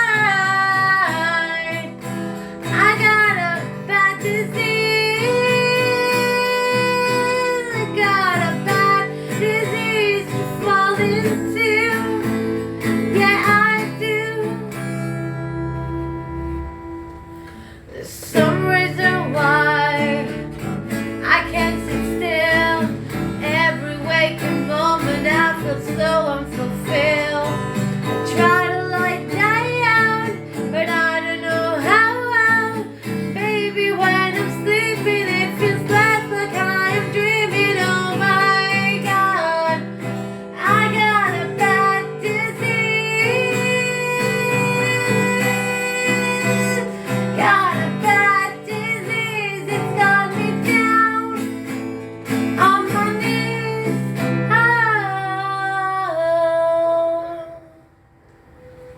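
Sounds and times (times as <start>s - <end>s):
guitar: 0.0s - 58.9s
person singing wordless melody: 13.2s - 20.6s.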